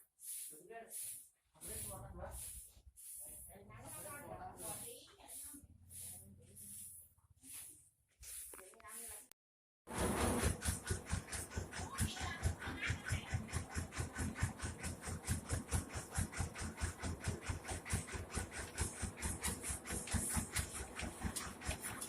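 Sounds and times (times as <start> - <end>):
rice huller engine running: 9.9 - 22.0.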